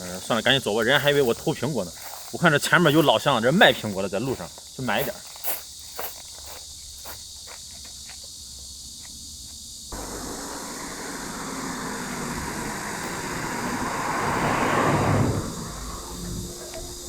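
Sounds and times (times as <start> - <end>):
cicadas buzzing: 0.0 - 17.0
vehicle passing: 10.0 - 17.0.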